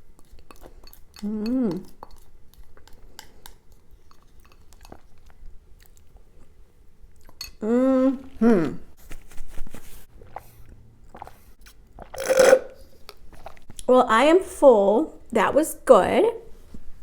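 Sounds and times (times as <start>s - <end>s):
person humming mm-hmm: 1.2s - 1.9s, 7.6s - 8.9s
person chewing crunchy food: 10.0s - 13.9s.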